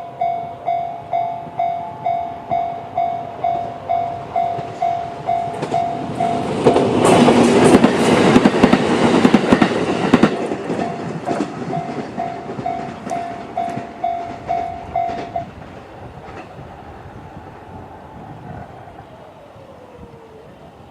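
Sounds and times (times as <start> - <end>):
level crossing warning bell: 0.0 - 8.2, 10.7 - 15.6
train wheels clicking over rail joints: 3.5 - 17.6.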